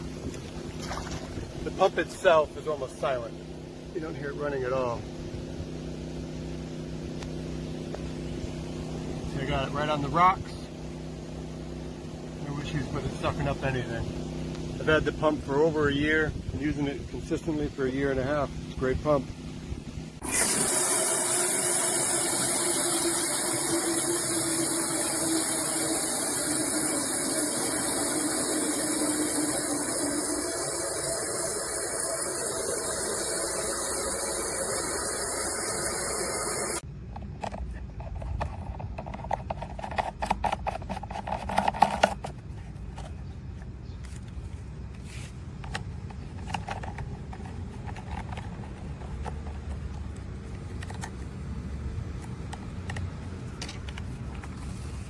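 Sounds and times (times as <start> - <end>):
portable generator running: 0.0 - 44.3, 45.6 - 51.4
water pouring into barrel: 0.4 - 2.0, 20.2 - 36.8.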